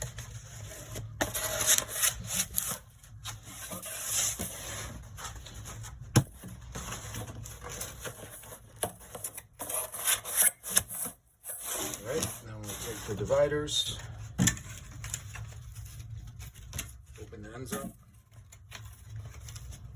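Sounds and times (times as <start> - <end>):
cardboard rubbing and scraping: 0.0 - 13.7.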